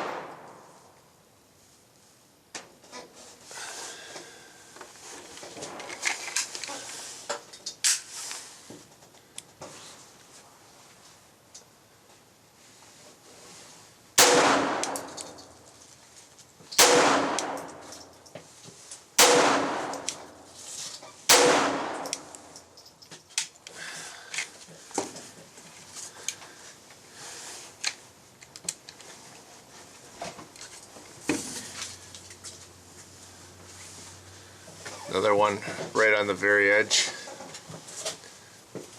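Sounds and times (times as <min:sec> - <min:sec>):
pistol shots echoing: 0:00.0 - 0:00.6, 0:14.2 - 0:15.4, 0:16.8 - 0:17.9, 0:19.2 - 0:20.4, 0:21.3 - 0:22.5
pistol handling clicks and clatter: 0:14.5 - 0:15.8, 0:16.7 - 0:18.4, 0:19.6 - 0:24.5.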